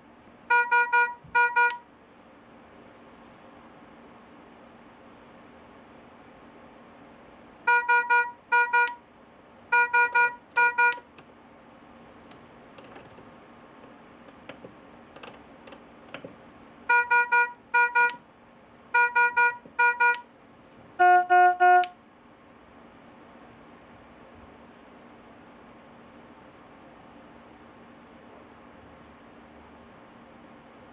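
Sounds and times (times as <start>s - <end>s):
patient monitor alarm beeps: 0.5s - 1.8s, 7.7s - 9.0s, 9.8s - 11.0s, 16.9s - 18.2s, 19.0s - 20.2s.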